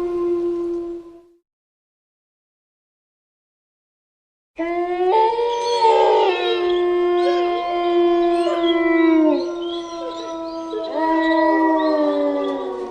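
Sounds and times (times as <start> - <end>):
wolves howling: 4.6 - 12.9.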